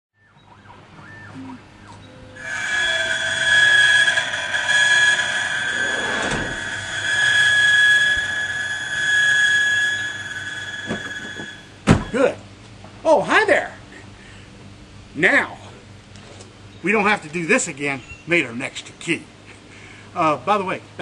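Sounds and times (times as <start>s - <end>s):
key-cutting machine whine: 2.0s - 12.2s.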